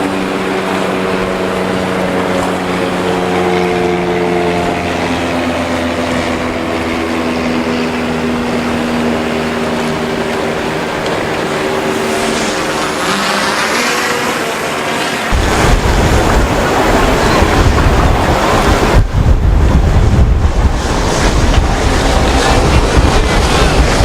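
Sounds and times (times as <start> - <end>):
outboard engines running hard: 0.0 - 24.0
rushing water: 0.0 - 24.0
wind noise: 0.0 - 24.0.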